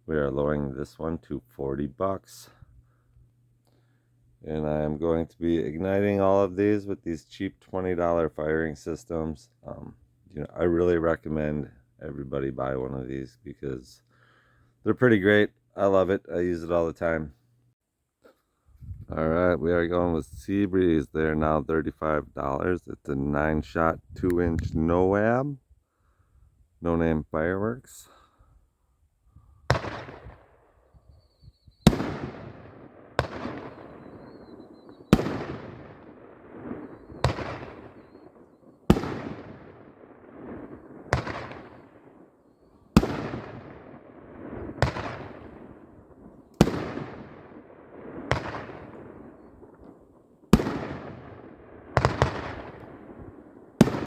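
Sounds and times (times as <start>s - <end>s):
fireworks bangs with crackle: 29.7s - 30.4s, 31.8s - 45.9s, 46.5s - 54.0s.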